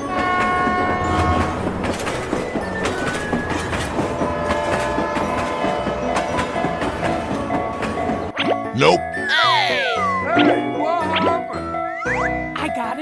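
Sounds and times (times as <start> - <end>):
train wheels clacking: 0.0 - 8.3.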